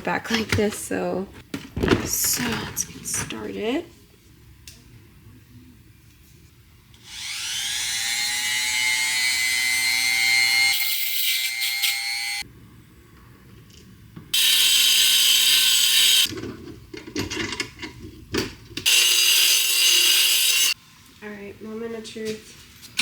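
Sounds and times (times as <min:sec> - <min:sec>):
electric grinder whining: 0:07.0 - 0:12.4, 0:14.4 - 0:16.3, 0:18.9 - 0:20.8.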